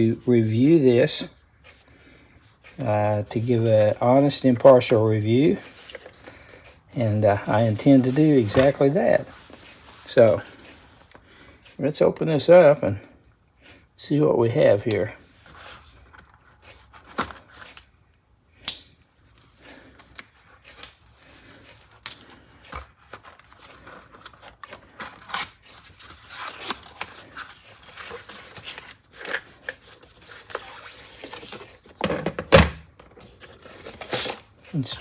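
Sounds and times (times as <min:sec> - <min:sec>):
packaging rustling: 0:02.6 - 0:11.2, 0:19.4 - 0:35.0.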